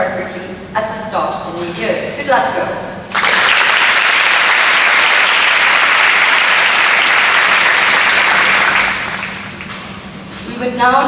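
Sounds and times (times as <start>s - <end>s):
audience applauding: 3.1s - 9.8s.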